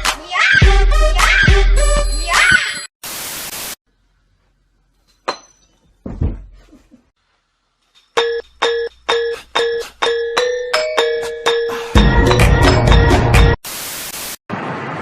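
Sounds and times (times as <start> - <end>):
burst of static: 3.0 - 3.8, 13.6 - 14.4
dull thud: 6.0 - 6.6.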